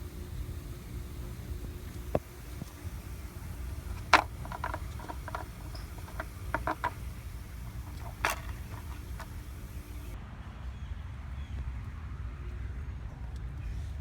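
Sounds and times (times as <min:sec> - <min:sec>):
low steady hum: 0:00.0 - 0:10.2.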